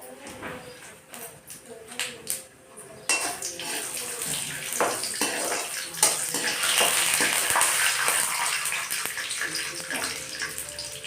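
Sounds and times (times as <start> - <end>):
dishes and utensils clinking: 0.0 - 11.0
water running from tap: 3.4 - 11.0.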